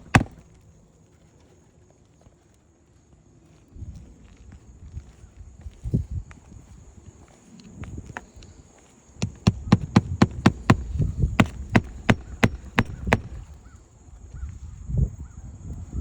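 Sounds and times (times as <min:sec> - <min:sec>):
hammer driving nails: 0:00.0 - 0:00.4, 0:09.2 - 0:13.5.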